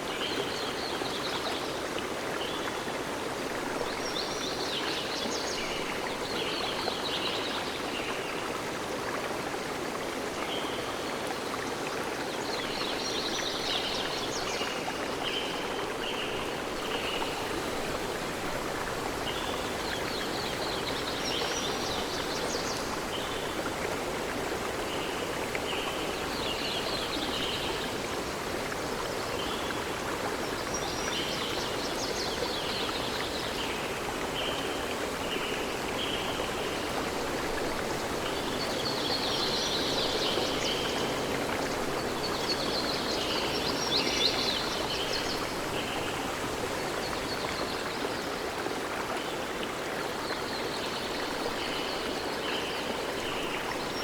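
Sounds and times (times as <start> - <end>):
running water: 0.0 - 54.0.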